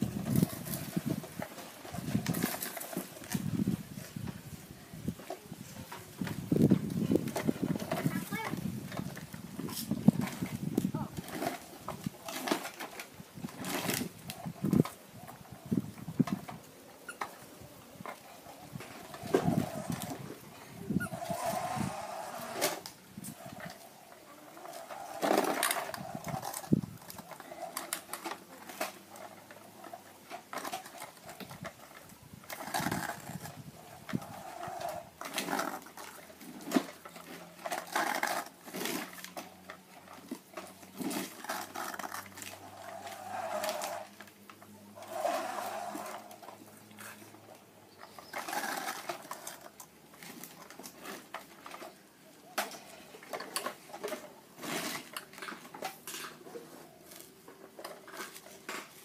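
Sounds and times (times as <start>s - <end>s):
toy electric motor whirring: 18.5s - 30.0s, 32.5s - 39.3s, 41.1s - 44.3s, 45.0s - 46.7s, 48.0s - 50.4s
plastic toy parts clattering: 52.6s - 59.0s.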